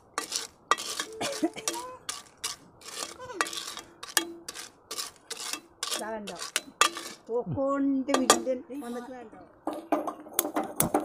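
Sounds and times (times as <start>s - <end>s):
clinks of metal cookware: 8.1s - 8.5s.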